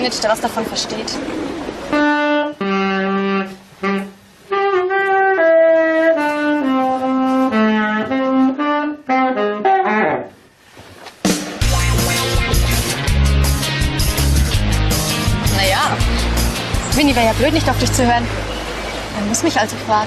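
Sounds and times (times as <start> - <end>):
saxophone playing slow melody: 1.9 - 10.4.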